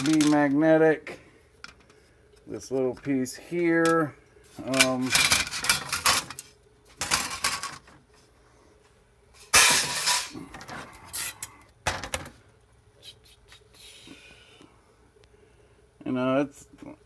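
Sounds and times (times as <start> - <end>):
metal parts clattering: 0.0 - 0.6, 3.8 - 7.9, 9.4 - 10.4.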